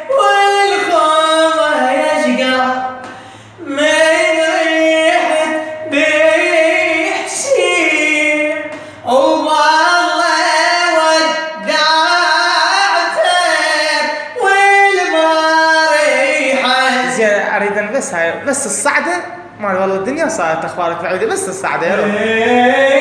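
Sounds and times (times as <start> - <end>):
person singing unaccompanied: 0.0 - 17.8, 21.8 - 23.0
singer breathing: 3.0 - 3.6, 8.7 - 9.1.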